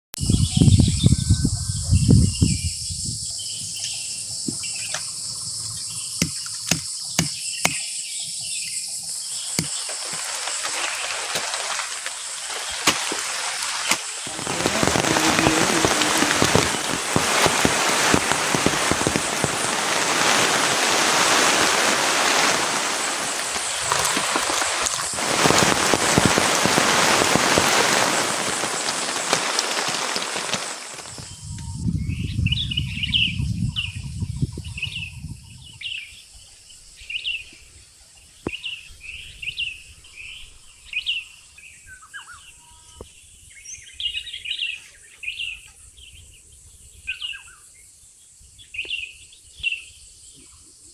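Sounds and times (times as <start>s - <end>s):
high insect drone: 0.2s - 37.9s
rain falling: 9.4s - 31.5s.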